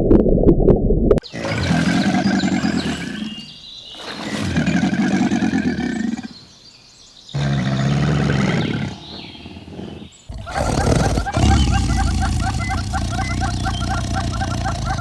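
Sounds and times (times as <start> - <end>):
birds chirping: 1.2 - 15.0
large animal low calls: 7.4 - 15.0.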